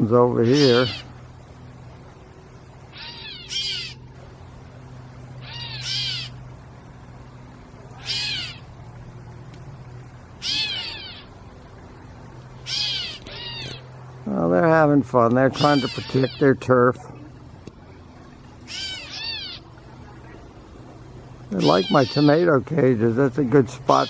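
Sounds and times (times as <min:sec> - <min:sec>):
catbirds mewing: 0:00.2 - 0:14.2, 0:15.4 - 0:17.4, 0:18.0 - 0:22.6, 0:23.6 - 0:24.0.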